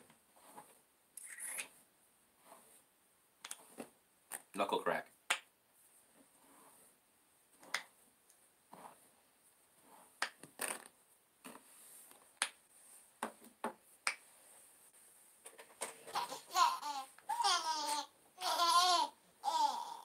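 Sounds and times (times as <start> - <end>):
knuckles cracking: 3.4 - 3.7, 7.6 - 7.9, 10.2 - 10.9.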